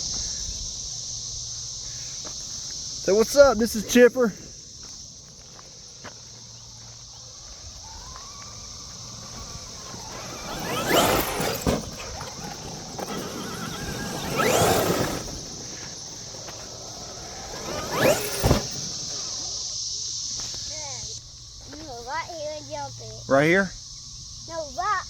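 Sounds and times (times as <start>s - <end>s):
electric motor whining: 6.3s - 21.2s.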